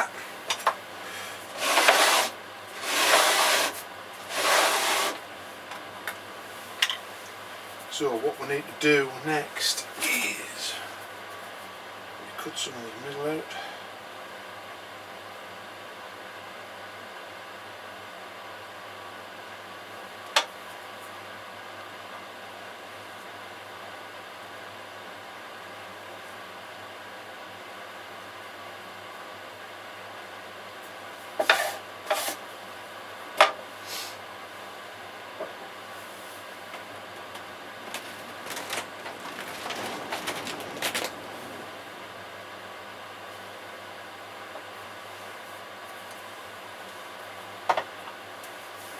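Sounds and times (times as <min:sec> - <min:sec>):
steady mechanical hiss: 0:00.0 - 0:14.2, 0:31.1 - 0:48.9
scraping strokes across clay: 0:01.4 - 0:05.2.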